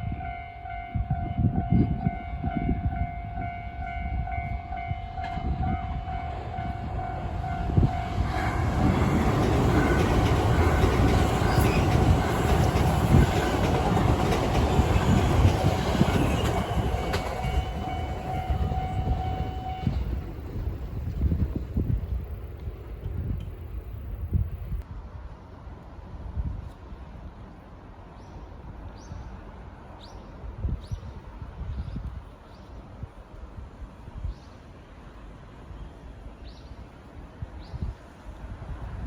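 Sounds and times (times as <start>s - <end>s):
level crossing warning bell: 0.0s - 14.2s, 14.8s - 20.2s
train passing: 0.0s - 39.0s.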